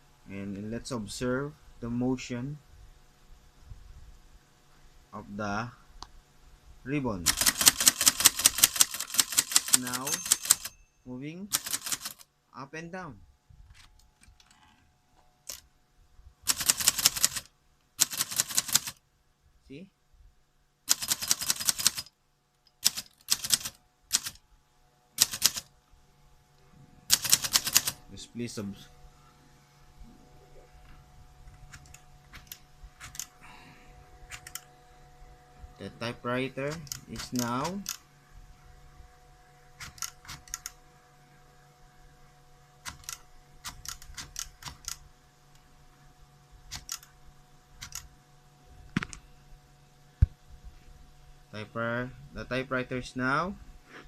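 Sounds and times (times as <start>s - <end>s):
typewriter keys clacking: 7.3s - 10.8s, 11.5s - 12.2s, 16.5s - 19.0s, 20.9s - 22.1s, 22.8s - 24.4s, 25.2s - 25.7s, 27.1s - 28.0s, 36.7s - 38.0s.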